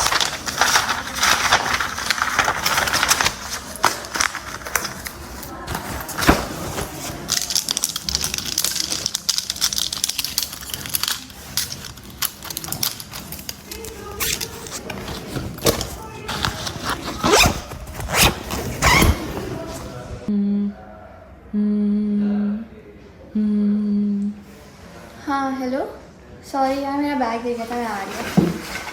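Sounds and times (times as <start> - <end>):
objects clicking and knocking: 2.7 - 18.6.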